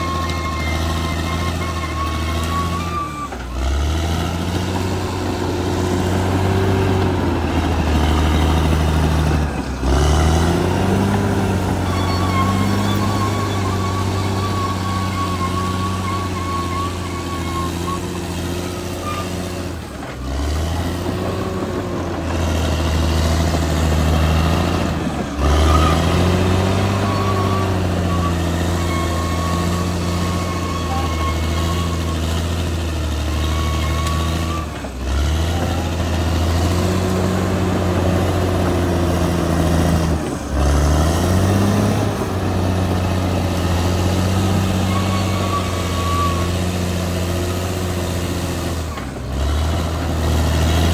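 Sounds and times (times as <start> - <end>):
bulldozer diesel engine running: 0.0 - 50.9.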